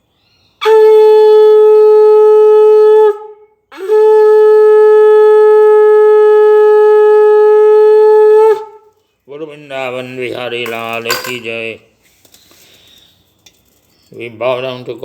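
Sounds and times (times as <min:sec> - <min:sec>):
conch shell blasts: 0:10.7 - 0:11.6.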